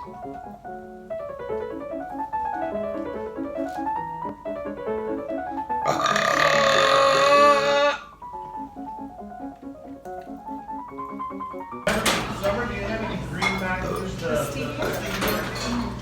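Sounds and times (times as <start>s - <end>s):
light piano music: 0.0s - 16.0s
long loud burp: 5.8s - 8.2s.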